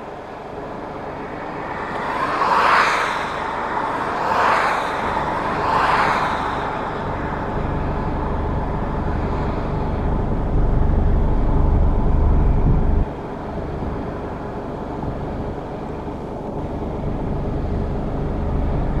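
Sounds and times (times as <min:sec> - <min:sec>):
combine harvester engine rumble: 0:00.0 - 0:19.0
steady machine hum: 0:06.4 - 0:19.0.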